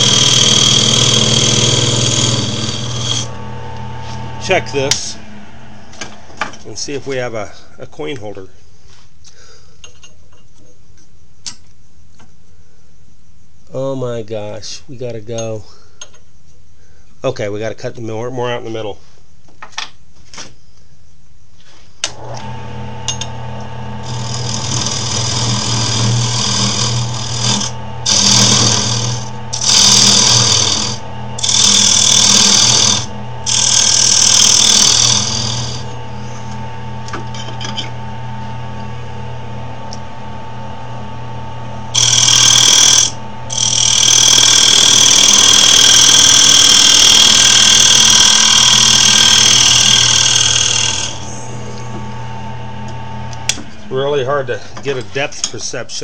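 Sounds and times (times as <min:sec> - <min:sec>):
turning tool scraping wood: 0:00.0 - 0:03.4, 0:24.0 - 0:36.6, 0:41.9 - 0:51.4
lathe motor humming: 0:00.0 - 0:06.5, 0:22.2 - 0:55.0.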